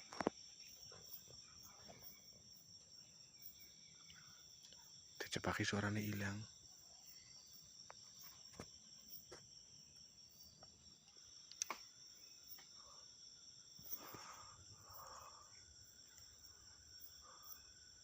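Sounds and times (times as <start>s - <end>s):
crickets droning: 0.0s - 18.0s
faint clicks: 11.1s - 11.8s.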